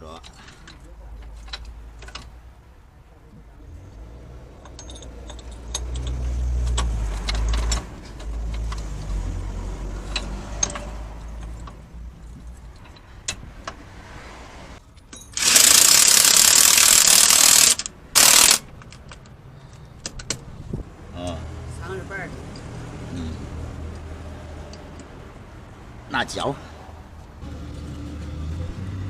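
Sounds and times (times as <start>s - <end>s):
hand tools clicking on metal: 15.1s - 20.4s.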